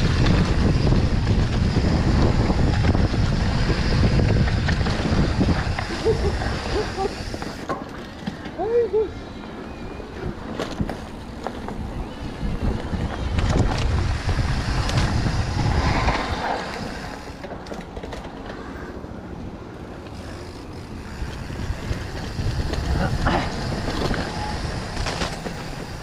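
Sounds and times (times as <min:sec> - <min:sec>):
wind buffeting microphone: 0:00.0 - 0:07.7, 0:08.6 - 0:17.4, 0:20.2 - 0:26.0
bike rumbling and rattling on trail: 0:00.0 - 0:26.0.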